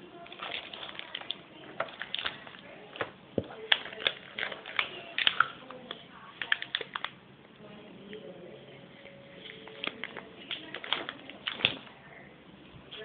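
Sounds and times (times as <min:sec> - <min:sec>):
packaging crinkling: 0:00.2 - 0:07.2, 0:09.4 - 0:12.0.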